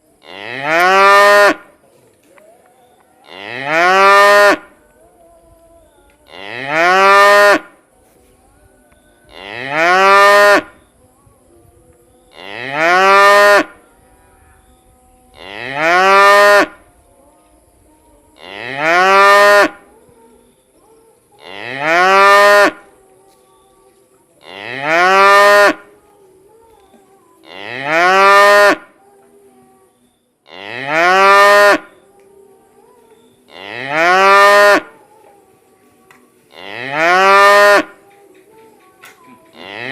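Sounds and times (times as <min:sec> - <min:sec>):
cow mooing: 0:03.2 - 0:04.7, 0:09.3 - 0:10.8, 0:15.4 - 0:16.8, 0:21.4 - 0:22.8, 0:24.4 - 0:25.8, 0:27.4 - 0:28.9, 0:30.5 - 0:31.9, 0:33.5 - 0:34.9, 0:36.5 - 0:38.0.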